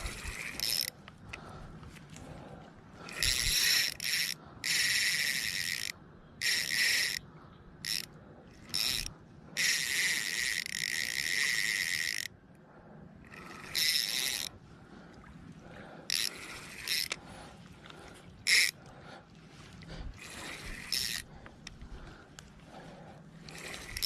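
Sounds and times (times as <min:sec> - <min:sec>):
fishing reel drag clicking: 0:00.0 - 0:01.5, 0:03.0 - 0:12.4, 0:13.2 - 0:14.6, 0:16.0 - 0:17.2, 0:17.9 - 0:18.9, 0:20.0 - 0:22.5, 0:23.4 - 0:24.0.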